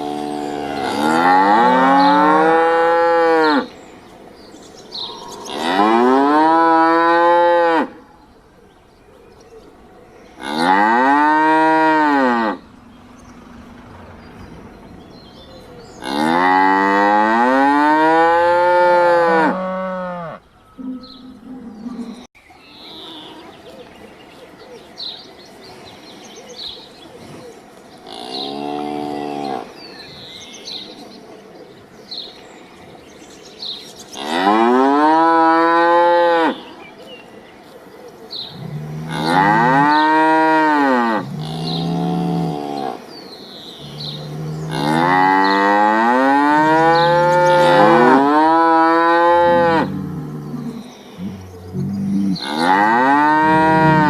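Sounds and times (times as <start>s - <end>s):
cattle mooing: 0.0s - 3.7s, 5.0s - 8.0s, 10.4s - 22.3s, 38.6s - 43.0s, 43.8s - 54.0s.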